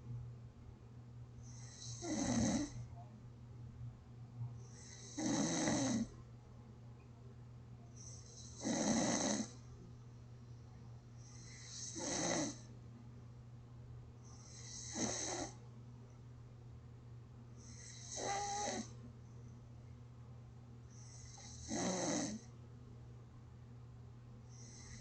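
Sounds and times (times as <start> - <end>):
person snoring: 1.5 - 2.8, 4.7 - 6.1, 8.1 - 9.5, 11.4 - 12.6, 14.4 - 15.5, 17.6 - 18.9, 21.1 - 22.4.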